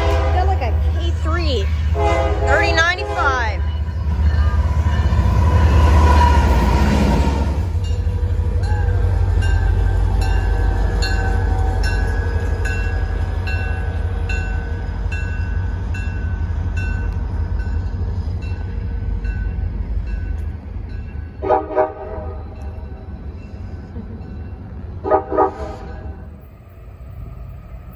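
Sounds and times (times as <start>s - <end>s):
train horn blasts: 0.0s - 1.2s, 1.8s - 3.8s, 21.4s - 22.5s, 25.0s - 26.1s
train rumbling past: 0.0s - 27.9s.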